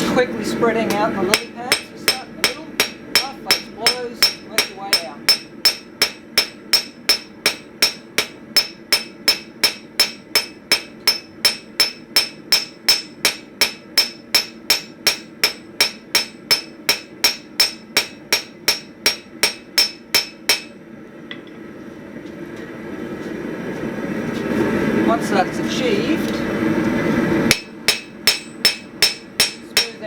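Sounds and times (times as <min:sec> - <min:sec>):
hammer ringing on anvil: 0:01.3 - 0:20.8, 0:27.5 - 0:30.0.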